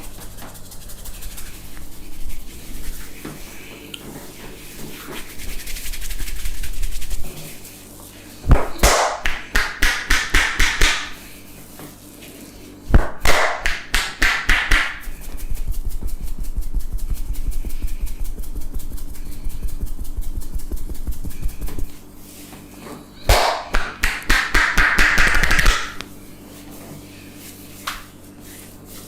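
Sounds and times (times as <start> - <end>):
sharp hand slaps: 8.5 - 11.2, 13.0 - 15.0, 23.3 - 26.0.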